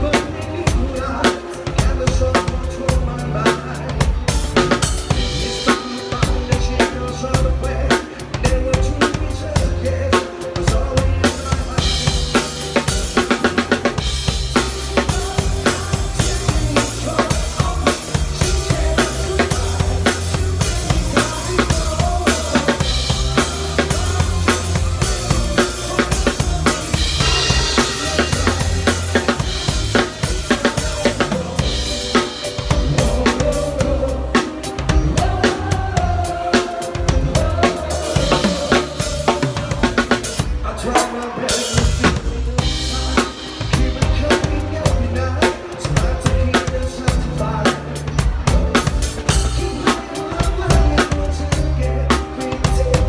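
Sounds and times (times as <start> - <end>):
drum kit playing: 0.0 - 53.0
pop backing track: 0.0 - 53.0
cymbals: 11.7 - 40.6.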